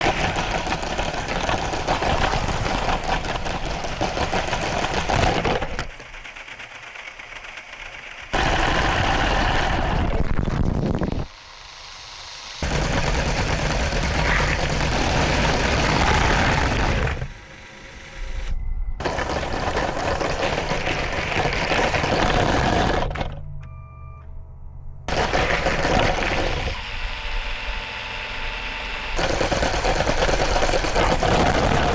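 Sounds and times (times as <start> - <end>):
toy train rattling on plastic track: 0.0 - 8.7, 29.2 - 31.9.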